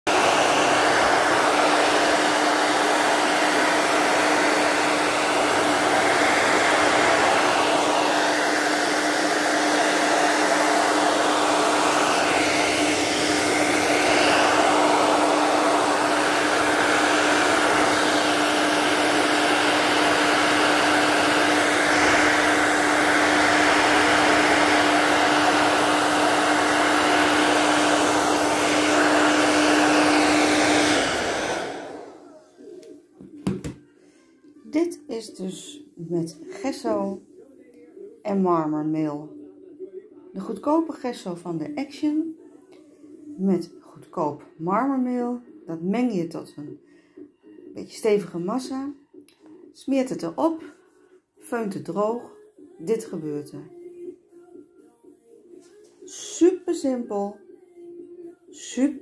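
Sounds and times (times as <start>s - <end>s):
hair dryer running: 0.0s - 33.8s, 35.1s - 37.2s.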